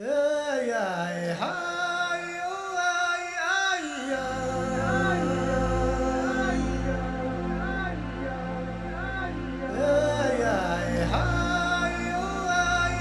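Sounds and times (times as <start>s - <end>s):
low steady bass: 4.2s - 13.0s.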